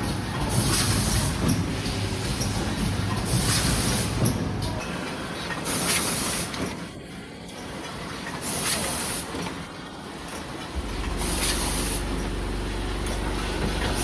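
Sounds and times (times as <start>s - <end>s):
low steady hum: 10.7s - 14.0s
compressed air hiss: 11.2s - 12.1s.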